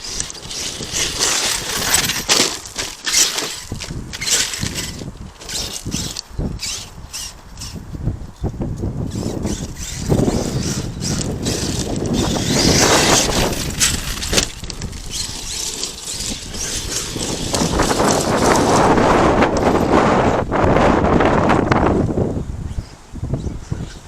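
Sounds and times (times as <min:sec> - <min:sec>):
tyres on gravel: 0:00.0 - 0:07.8, 0:09.0 - 0:22.0
rc truck motor: 0:00.0 - 0:07.9, 0:09.0 - 0:21.8
wind buffeting microphone: 0:00.0 - 0:24.0.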